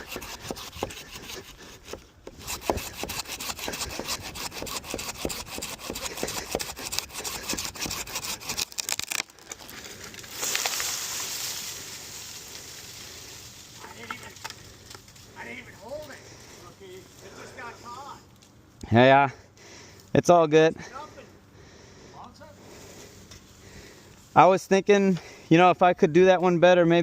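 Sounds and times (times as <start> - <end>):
hand saw cutting wood: 0.0 - 9.3
branches rustling as treetop falls: 8.6 - 16.1.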